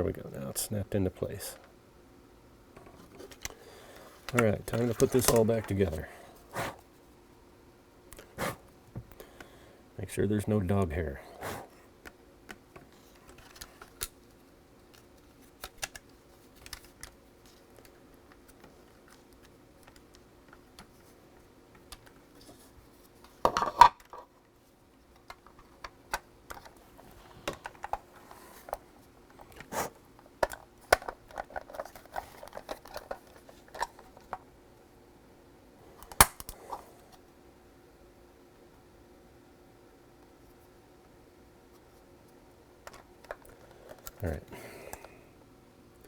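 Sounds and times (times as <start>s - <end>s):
plastic parts clattering: 2.8s - 6.0s, 23.3s - 24.4s, 25.2s - 28.8s, 30.4s - 34.4s.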